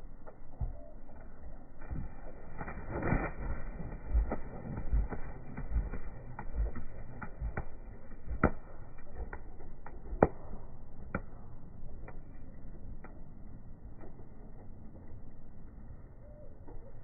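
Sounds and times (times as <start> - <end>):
low rumble: 0.0 - 17.0.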